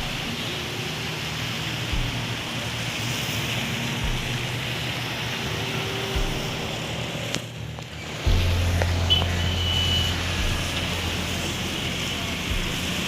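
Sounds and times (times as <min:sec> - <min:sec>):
rain hissing: 0:00.0 - 0:13.0
road traffic: 0:00.0 - 0:13.0
soft low thump: 0:06.2 - 0:06.8, 0:08.3 - 0:09.4, 0:10.4 - 0:10.9.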